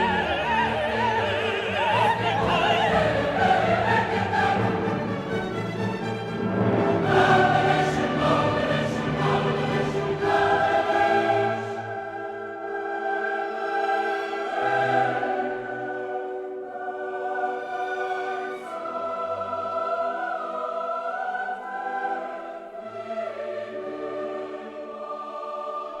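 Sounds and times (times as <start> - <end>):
orchestra playing: 0.0 - 12.5
choir singing sustained notes: 0.0 - 26.0.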